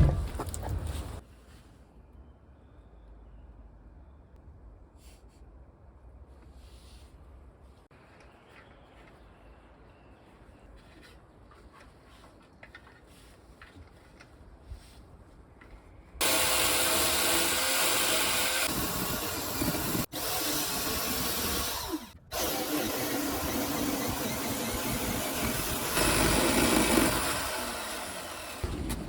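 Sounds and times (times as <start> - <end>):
chainsaw cutting wood: 16.2 - 29.0.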